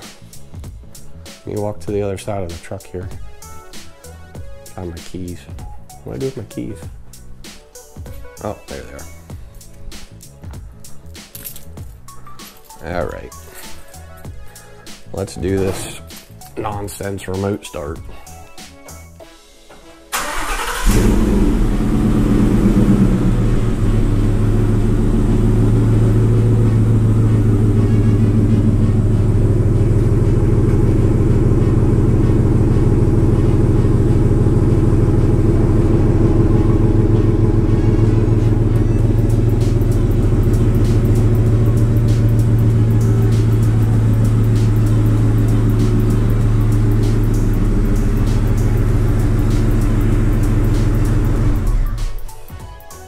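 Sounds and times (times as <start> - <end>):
truck engine starting and idling: 20.0 - 52.3.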